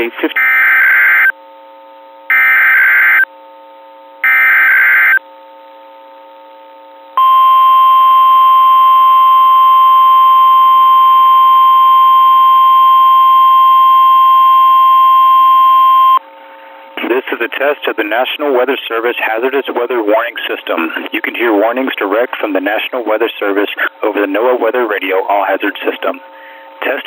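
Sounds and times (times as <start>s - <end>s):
steady alarm tone: 0.4s - 1.4s, 2.3s - 3.3s, 4.2s - 5.2s, 7.2s - 16.2s.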